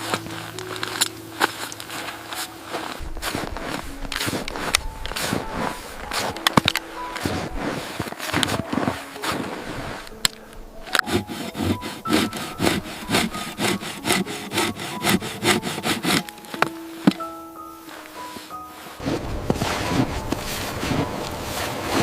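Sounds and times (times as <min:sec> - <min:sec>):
saw cutting through wood: 0:11.0 - 0:17.2.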